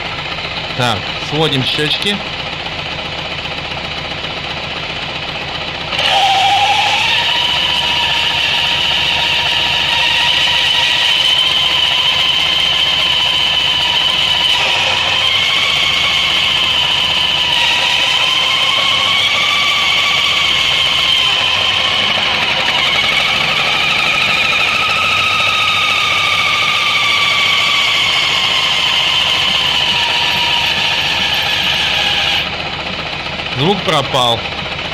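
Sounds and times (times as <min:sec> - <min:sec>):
scooter engine running: 0:00.0 - 0:34.9
high whistle: 0:06.0 - 0:32.5.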